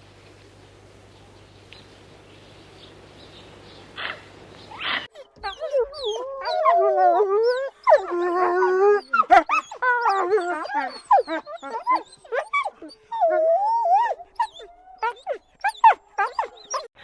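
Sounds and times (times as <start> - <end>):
wolves yipping and whining: 4.0 - 17.0.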